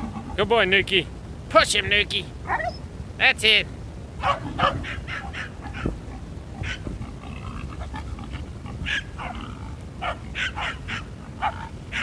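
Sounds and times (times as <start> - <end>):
dogs barking and yipping: 2.4 - 2.9, 4.2 - 12.0.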